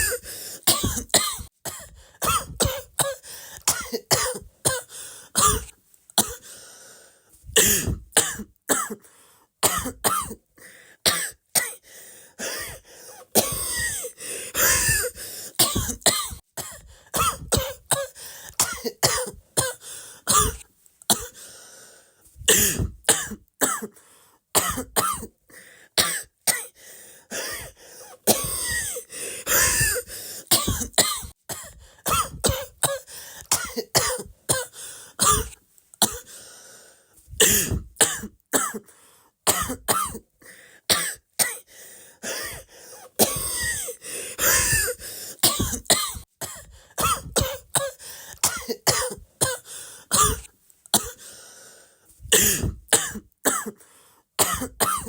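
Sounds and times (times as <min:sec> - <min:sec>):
person coughing: 0:00.0 - 0:06.5, 0:07.6 - 0:09.0, 0:09.6 - 0:10.4, 0:12.4 - 0:21.4, 0:22.5 - 0:24.0, 0:24.6 - 0:25.3, 0:26.0 - 0:36.4, 0:37.4 - 0:38.9, 0:39.5 - 0:40.3, 0:40.9 - 0:51.3, 0:52.3 - 0:53.8, 0:54.4 - 0:55.0.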